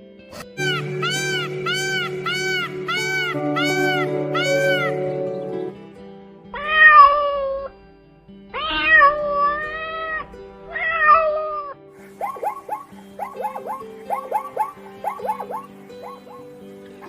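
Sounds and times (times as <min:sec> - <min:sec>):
background music: 0:00.0 - 0:17.0
cat meowing: 0:01.0 - 0:05.0, 0:06.6 - 0:07.8, 0:08.5 - 0:11.8.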